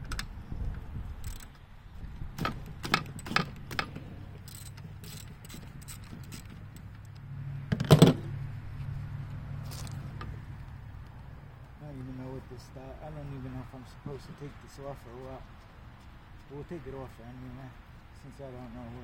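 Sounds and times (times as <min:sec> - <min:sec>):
metal tools clinking: 0:03.1 - 0:07.0.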